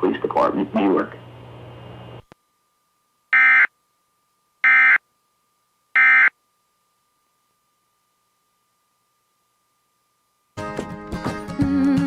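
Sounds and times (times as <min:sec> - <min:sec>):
buzzy digital data tone bursts: 0:03.3 - 0:03.7, 0:04.6 - 0:05.0, 0:06.0 - 0:06.3.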